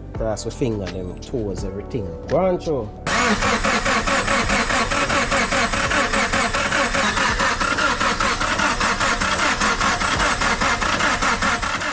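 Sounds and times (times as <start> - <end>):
engine cranking by starter: 3.0 - 11.9.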